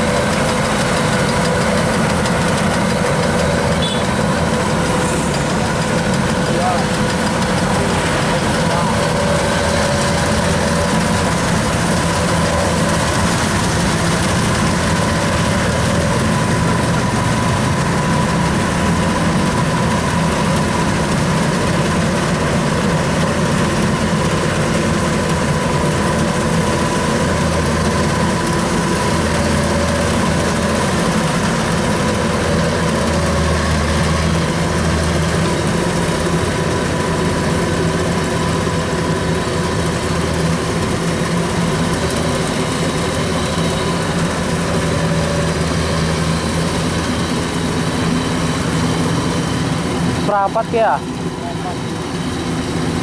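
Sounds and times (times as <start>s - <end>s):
combine harvester diesel engine drone: 0.0s - 53.0s
steady high whine: 35.5s - 53.0s.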